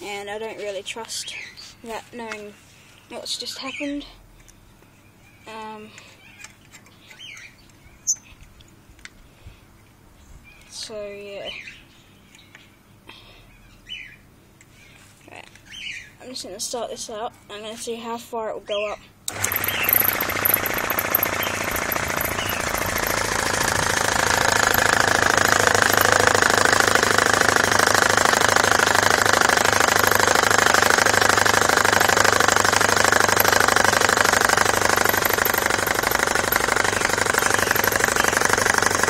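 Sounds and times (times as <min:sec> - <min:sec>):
air compressor pulsing: 0:19.3 - 0:39.0.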